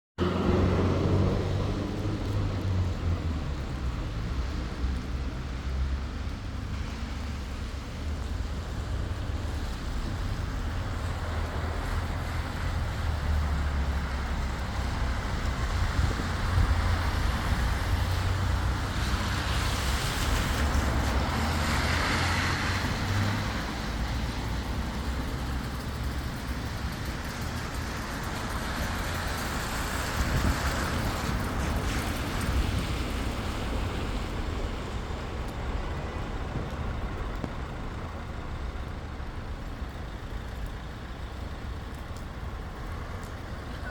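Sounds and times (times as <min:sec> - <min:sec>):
vehicles passing: 0:00.2 - 0:43.9
steady rain falling: 0:00.3 - 0:43.9
low engine rumble: 0:22.6 - 0:43.9.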